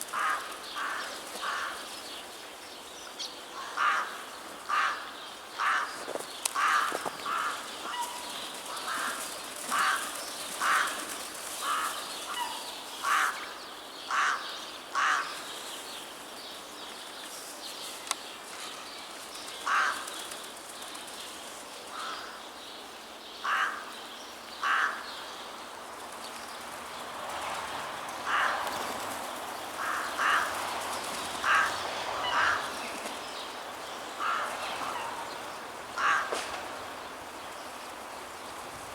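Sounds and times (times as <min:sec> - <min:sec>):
crows cawing: 0:00.1 - 0:01.9, 0:03.6 - 0:15.4, 0:19.6 - 0:20.2, 0:21.9 - 0:22.4, 0:23.4 - 0:23.9, 0:24.6 - 0:25.1, 0:28.2 - 0:28.8, 0:29.8 - 0:30.8, 0:31.4 - 0:32.8, 0:34.1 - 0:35.3, 0:36.0 - 0:36.7.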